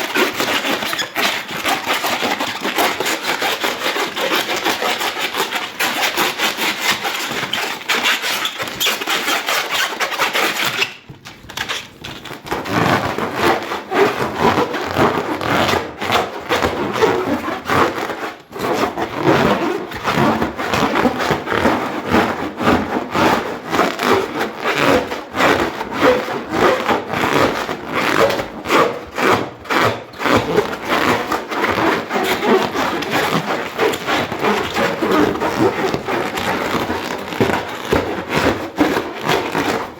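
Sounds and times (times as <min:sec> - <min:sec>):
hands rubbing balloon: 0:00.0 - 0:39.9.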